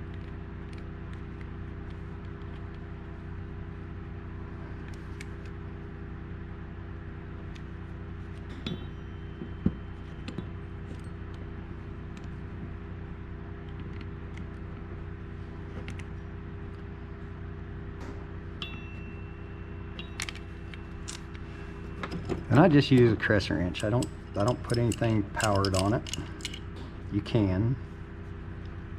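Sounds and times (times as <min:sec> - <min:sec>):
steady low hum: 0:00.0 - 0:28.9
metallic clinks of hand tools: 0:08.5 - 0:11.2, 0:18.6 - 0:26.9
wrench running down nuts: 0:20.0 - 0:26.9.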